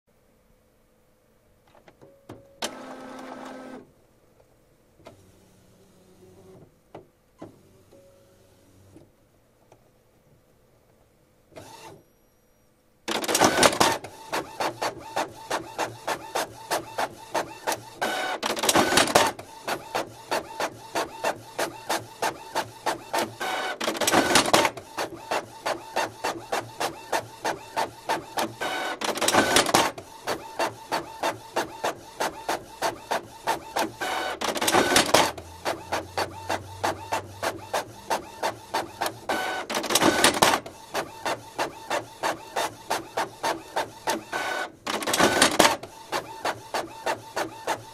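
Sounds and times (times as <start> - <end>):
printer mechanical ticks: 13.1 - 47.9
printer rushing burst: 33.7 - 42.7, 43.4 - 45.8.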